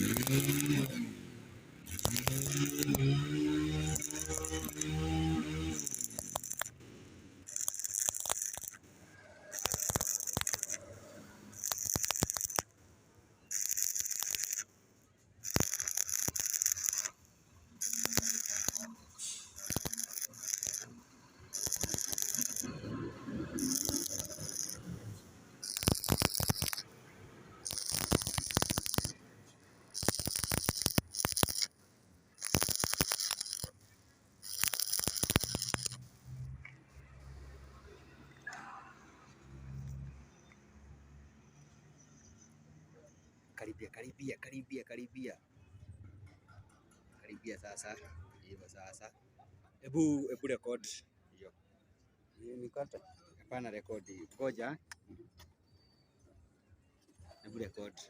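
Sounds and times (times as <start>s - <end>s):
arc welding crackling: 0.0s - 12.7s, 13.5s - 14.7s, 15.4s - 26.9s, 27.5s - 36.4s.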